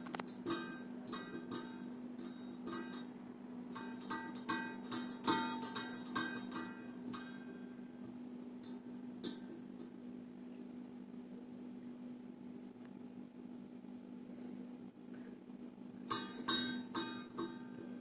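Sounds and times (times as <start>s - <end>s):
plucked string music: 0.0s - 3.1s, 3.7s - 7.7s, 16.1s - 17.9s
steady low hum: 0.0s - 18.0s.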